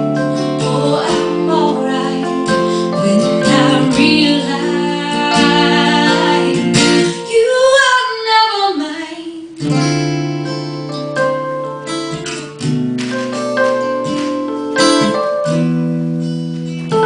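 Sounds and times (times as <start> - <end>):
guitar strumming chords: 0.0 - 7.6, 9.6 - 17.0
woman singing: 0.4 - 9.6.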